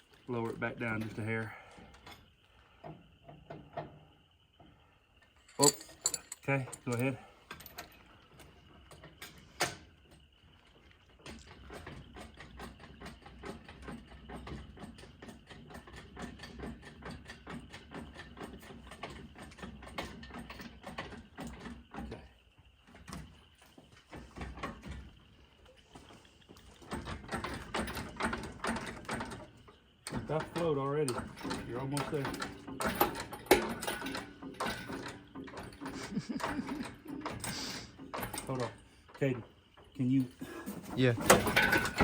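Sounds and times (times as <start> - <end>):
metallic clicking and rattling: 5.3 - 8.0, 26.8 - 42.0.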